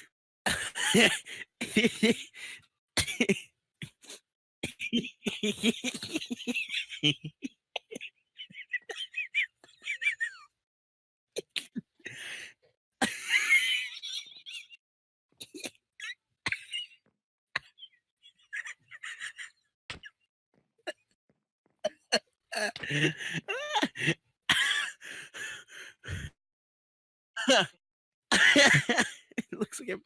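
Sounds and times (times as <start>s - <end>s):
man wheeze-laughing: 0.5s - 10.5s, 21.8s - 26.4s, 27.4s - 27.7s, 28.3s - 29.8s.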